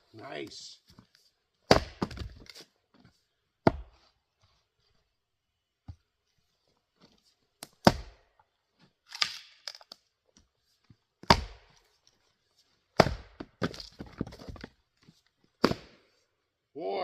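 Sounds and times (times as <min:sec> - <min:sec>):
axe chopping wood: 0:01.7 - 0:02.5, 0:03.6 - 0:04.0, 0:07.6 - 0:08.3, 0:09.1 - 0:09.8, 0:11.2 - 0:11.8, 0:13.0 - 0:14.7, 0:15.6 - 0:16.0.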